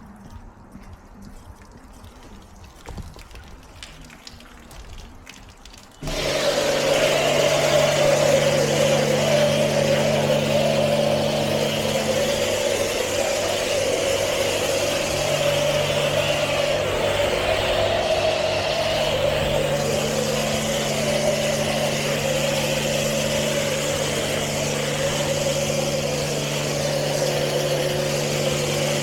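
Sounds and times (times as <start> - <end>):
faint drips and ticks: 0.0 - 6.0
car wash machinery whirring: 0.0 - 29.0
water spraying hiss: 5.8 - 29.0
steady hum: 6.0 - 29.0.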